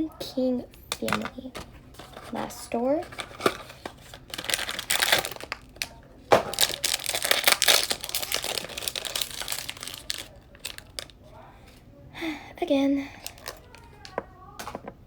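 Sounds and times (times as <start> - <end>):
plastic packaging crinkling: 1.0 - 11.2, 13.2 - 14.2.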